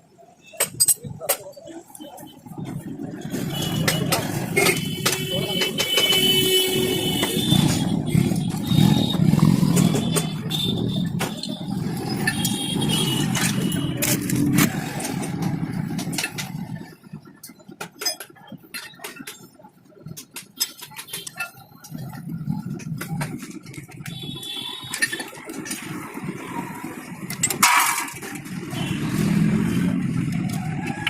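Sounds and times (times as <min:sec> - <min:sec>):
scattered clicks and knocks: 0:00.4 - 0:02.0, 0:02.6 - 0:31.0
motorcycle engine running: 0:03.3 - 0:16.8.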